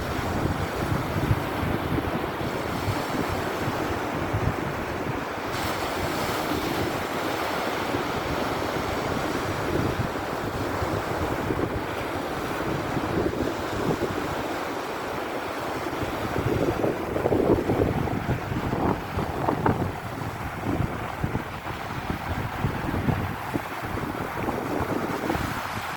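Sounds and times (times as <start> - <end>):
surf washing on shore: 0.0 - 25.9
wind buffeting microphone: 0.0 - 25.9.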